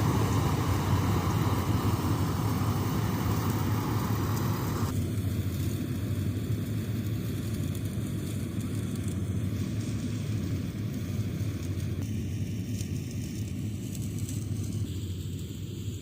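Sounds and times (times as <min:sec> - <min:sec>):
combine harvester engine drone: 0:00.0 - 0:16.0.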